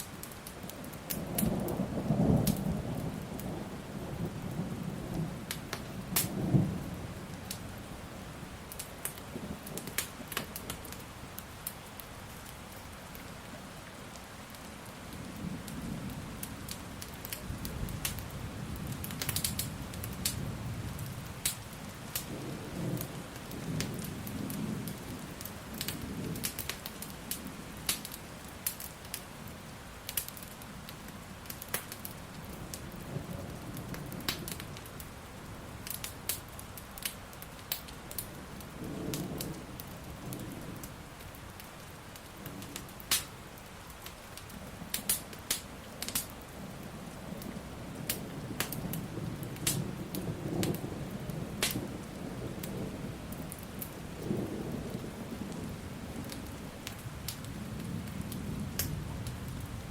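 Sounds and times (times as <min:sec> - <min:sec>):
steady rain: 0:00.0 - 0:59.9
wood fire crackling: 0:00.0 - 0:59.9.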